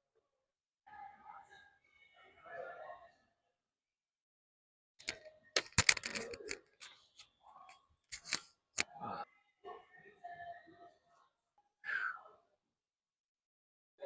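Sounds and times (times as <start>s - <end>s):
sharp clicks and knocks: 5.0s - 6.9s.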